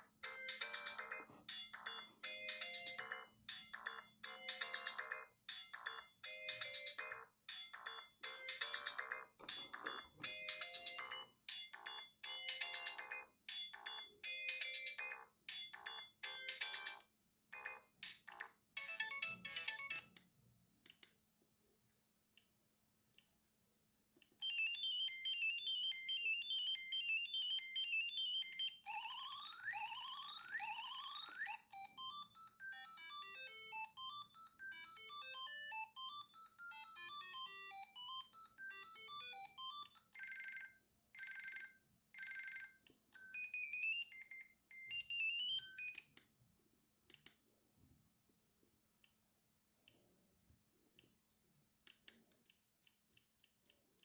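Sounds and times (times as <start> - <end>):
phone ringtones: 0.2 - 20.1, 24.4 - 46.1.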